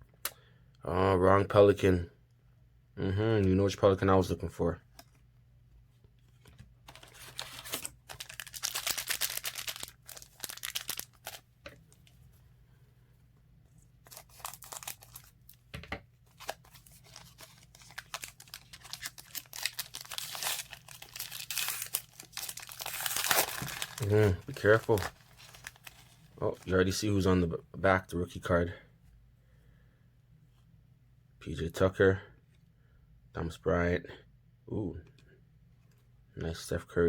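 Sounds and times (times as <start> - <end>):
wrapper tearing and crinkling: 6.9 - 11.4, 14.0 - 15.6, 16.4 - 26.6.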